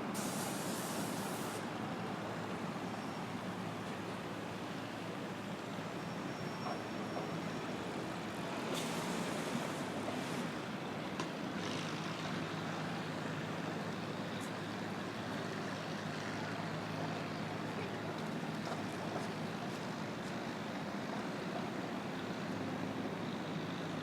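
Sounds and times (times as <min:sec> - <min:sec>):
brief hiss: 0:00.1 - 0:01.7, 0:08.7 - 0:10.5.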